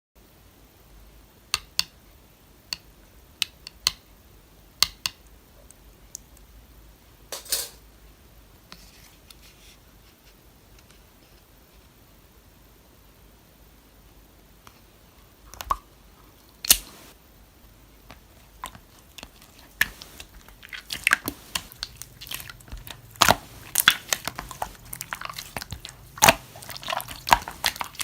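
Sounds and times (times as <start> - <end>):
slime squishing: 18.4 - 28.0
slime clicking and popping: 18.7 - 28.0.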